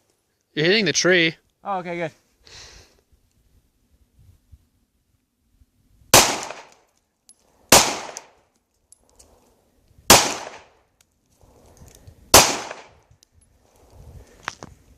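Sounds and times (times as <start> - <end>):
pistol shots with echo: 6.2 - 6.8, 7.7 - 8.3, 10.1 - 10.7, 12.3 - 13.0.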